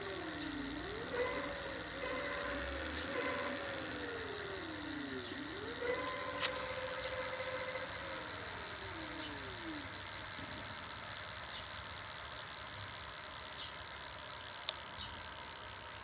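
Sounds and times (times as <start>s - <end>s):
electric motor whining: 0.0s - 16.0s.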